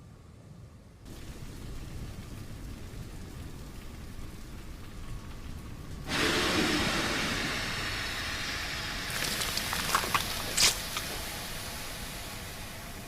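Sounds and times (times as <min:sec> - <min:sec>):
crackles: 0:01.1 - 0:06.1, 0:09.1 - 0:13.0
loud rush of hissing noise: 0:01.1 - 0:13.0
sharp crack: 0:09.1 - 0:11.3.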